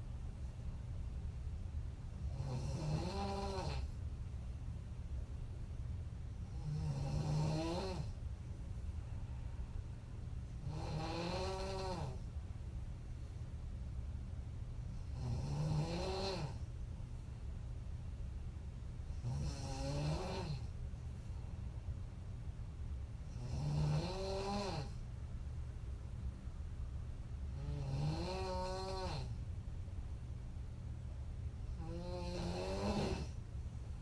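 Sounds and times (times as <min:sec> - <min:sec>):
steady low hum: 0:00.0 - 0:34.0
woman snoring: 0:02.2 - 0:03.9, 0:06.5 - 0:08.2, 0:10.6 - 0:12.2, 0:15.1 - 0:16.6, 0:19.2 - 0:20.7, 0:23.3 - 0:25.0, 0:27.5 - 0:29.3, 0:31.7 - 0:33.4.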